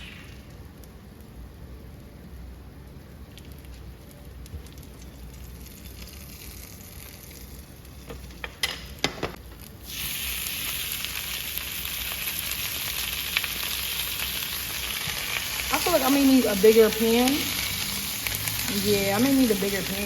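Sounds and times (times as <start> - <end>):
vegetables sizzling in oil: 9.6 - 20.0.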